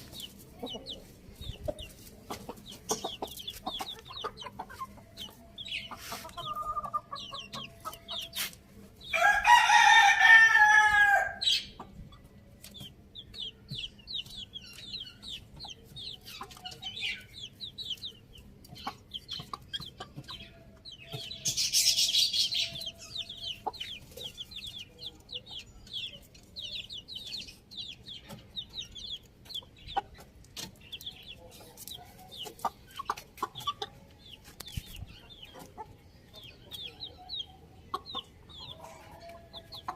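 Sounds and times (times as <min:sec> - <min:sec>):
hens clucking: 0:00.0 - 0:09.0, 0:13.7 - 0:22.0, 0:22.6 - 0:39.9
rooster crowing: 0:09.2 - 0:11.4.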